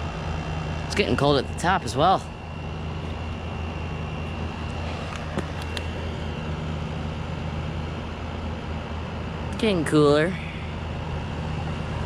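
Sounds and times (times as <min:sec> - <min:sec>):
air conditioner running: 0:00.0 - 0:12.0.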